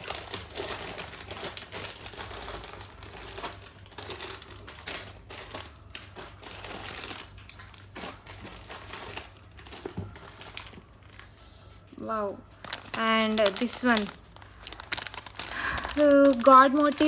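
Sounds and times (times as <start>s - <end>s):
packaging rustling and clicking: 0.0s - 17.0s.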